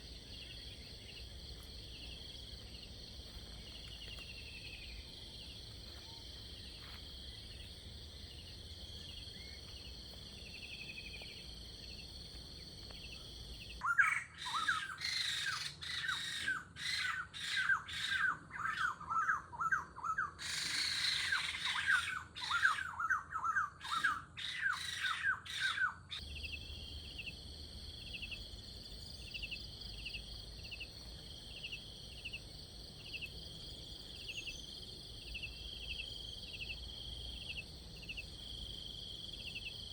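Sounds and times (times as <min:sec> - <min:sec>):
insect chorus trilling: 0:00.0 - 0:39.9
bird calls with falling chirps: 0:13.8 - 0:26.2.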